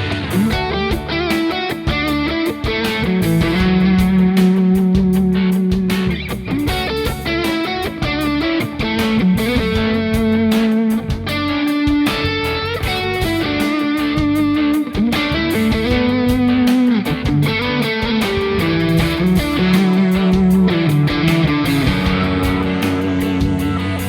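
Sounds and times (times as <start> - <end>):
electric guitar lead melody: 0.0 - 24.0.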